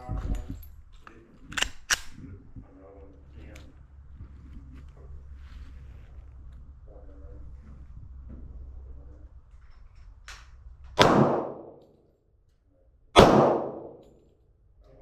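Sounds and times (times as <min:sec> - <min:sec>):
gunshots with echo: 0:11.0 - 0:11.8, 0:13.2 - 0:14.1.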